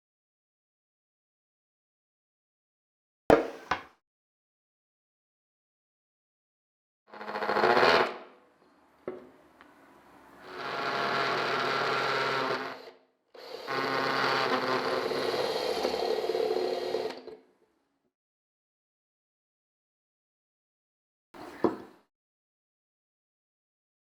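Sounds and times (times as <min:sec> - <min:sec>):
small electric motor running: 0:10.4 - 0:17.2.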